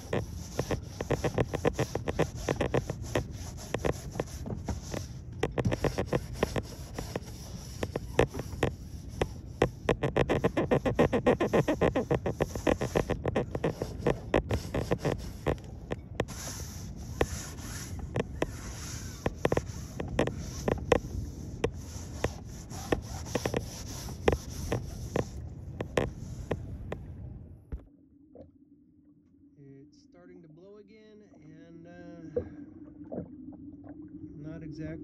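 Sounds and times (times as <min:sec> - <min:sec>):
scrubbing strokes on a boat hull: 0:00.0 - 0:27.1.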